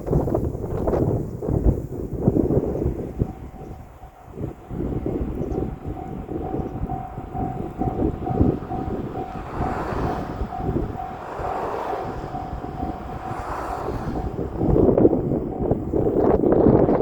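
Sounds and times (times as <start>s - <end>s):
crossing warning bell ringing: 2.3s - 17.0s
train wheels clattering over rails: 3.6s - 17.0s.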